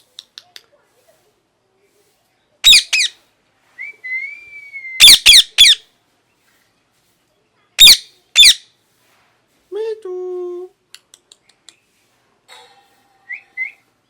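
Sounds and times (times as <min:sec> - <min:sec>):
parrot screeching calls: 0:02.6 - 0:03.2, 0:05.0 - 0:05.8, 0:07.8 - 0:08.6
parrot whistle: 0:02.6 - 0:03.2, 0:03.8 - 0:05.8, 0:07.8 - 0:08.6.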